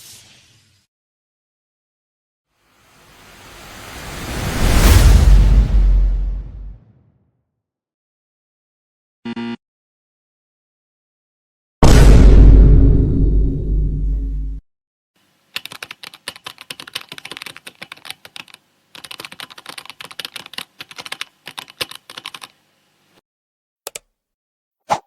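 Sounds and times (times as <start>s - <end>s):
loud low boom: 5.0s - 7.0s, 11.8s - 14.6s
keyboard typing clicks: 15.6s - 22.6s, 23.9s - 24.1s.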